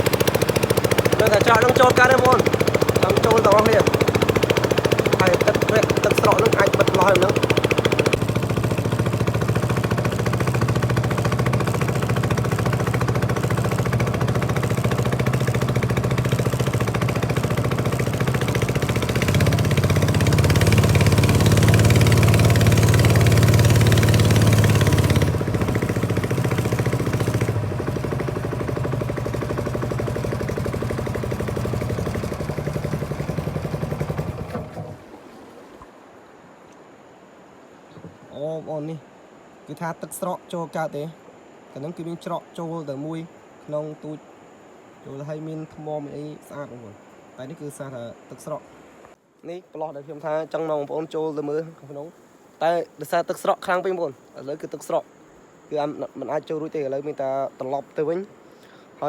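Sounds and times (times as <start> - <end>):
boat engine running: 0.0 - 35.3
rushing water: 0.0 - 59.0.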